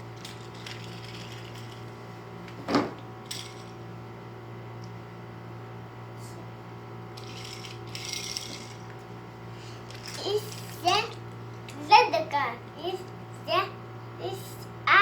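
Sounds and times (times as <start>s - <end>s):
steady low hum: 0.0s - 15.0s
toys rustling: 0.2s - 2.0s, 7.2s - 9.0s, 9.6s - 11.9s.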